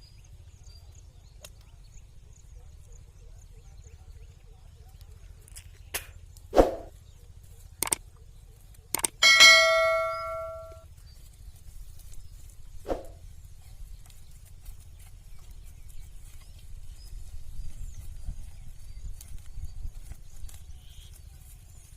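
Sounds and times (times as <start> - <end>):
sharp knocks: 9.0 - 10.8
ringing metallic clang: 9.1 - 10.8.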